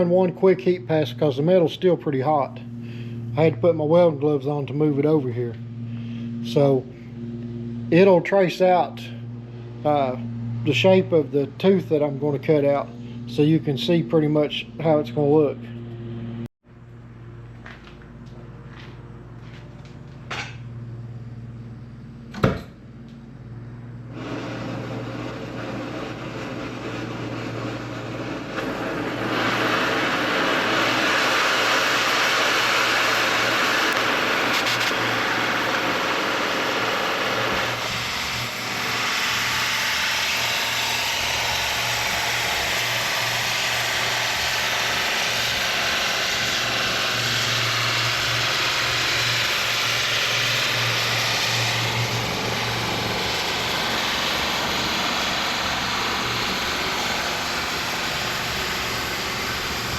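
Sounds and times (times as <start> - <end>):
torch flame hissing: 24.1 - 59.9
cutting torch pop: 24.2 - 40.5.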